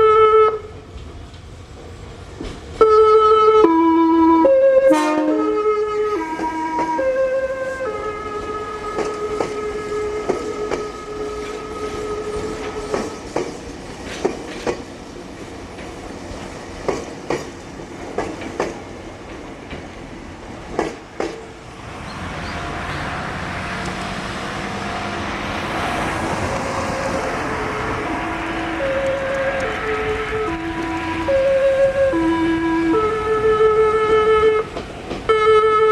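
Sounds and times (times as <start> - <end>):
train music horn melody: 0.0 - 0.9, 2.8 - 13.5, 25.3 - 35.9
train rumbling on bridge: 0.0 - 35.9
train wheels clicking over joints: 0.8 - 2.9, 6.0 - 7.5, 8.4 - 28.1, 33.7 - 35.9.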